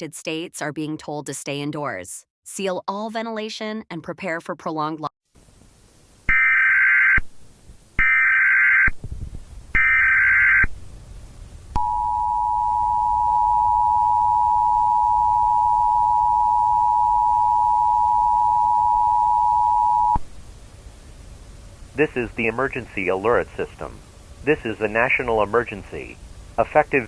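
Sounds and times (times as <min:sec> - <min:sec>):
two-tone attention signal beep: 0:11.8 - 0:20.2.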